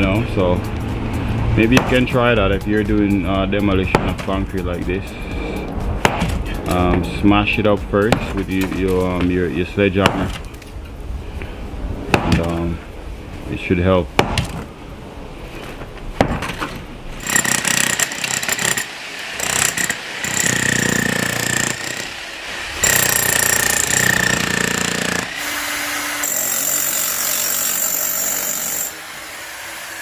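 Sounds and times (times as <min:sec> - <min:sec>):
jackhammer breaking concrete: 0:17.2 - 0:22.2, 0:22.8 - 0:25.3, 0:26.2 - 0:29.0.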